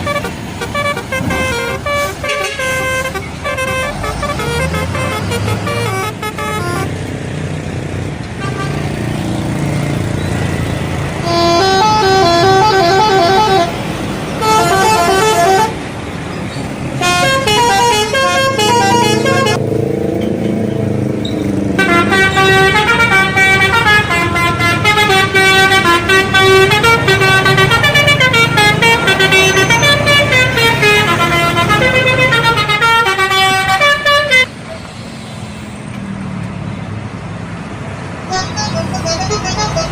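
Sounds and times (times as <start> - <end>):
musical bus horn: 0.0 - 7.0, 8.4 - 8.9, 11.1 - 15.8, 17.0 - 19.6, 21.8 - 34.5, 38.3 - 39.9.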